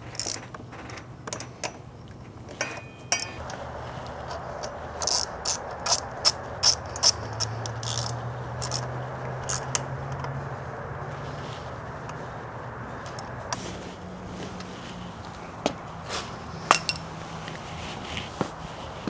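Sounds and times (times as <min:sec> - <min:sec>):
hand tools ratcheting on metal: 0:00.0 - 0:10.3
steady low hum: 0:00.0 - 0:19.0.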